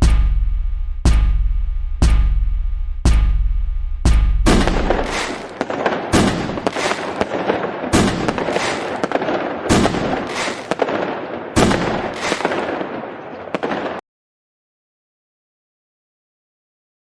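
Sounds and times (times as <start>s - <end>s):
firework crackling: 4.5s - 13.0s
firework bangs: 4.5s - 14.0s
small firework pops: 4.6s - 12.9s.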